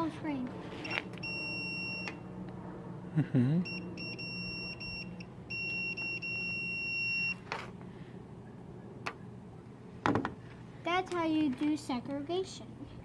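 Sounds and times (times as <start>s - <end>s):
multimeter continuity beeps: 0.8s - 2.2s, 3.6s - 7.4s.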